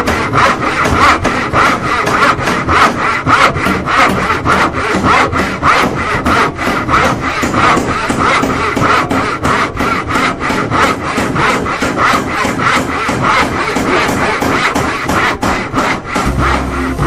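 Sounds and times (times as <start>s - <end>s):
handsaw sawing: 0.0s - 17.0s.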